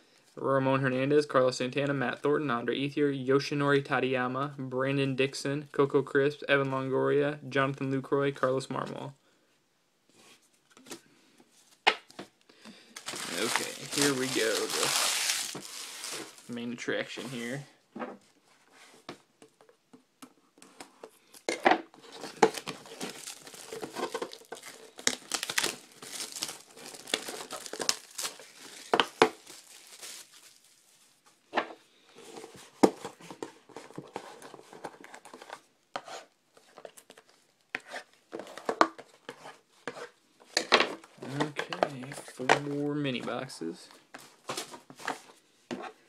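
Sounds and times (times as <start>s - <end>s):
plastic wrapping crinkling: 12.8s - 17.6s, 22.1s - 31.2s.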